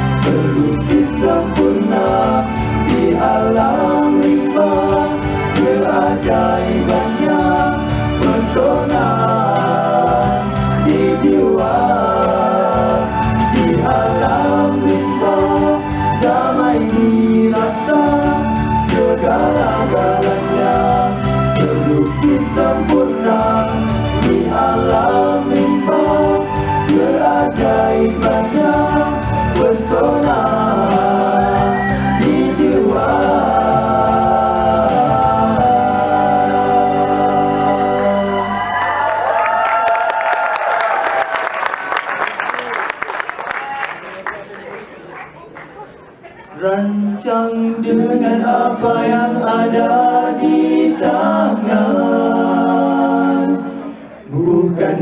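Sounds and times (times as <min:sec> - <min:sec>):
repeating percussion beat: 0:00.0 - 0:36.5
vocal group singing in harmony: 0:00.0 - 0:41.2, 0:46.6 - 0:55.0.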